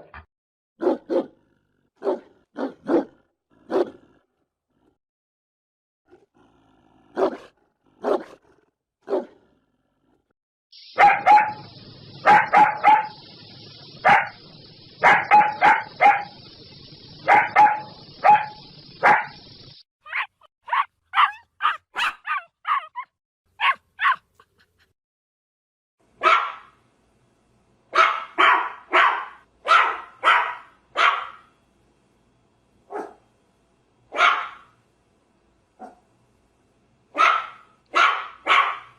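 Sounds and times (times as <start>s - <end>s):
big dogs barking: 0.8s - 1.4s, 2.0s - 4.0s, 7.1s - 8.4s, 9.0s - 9.4s, 10.9s - 13.4s, 14.0s - 16.5s, 17.2s - 19.4s, 20.7s - 23.0s, 28.0s - 31.4s, 32.9s - 33.2s, 34.1s - 34.7s, 37.2s - 38.9s.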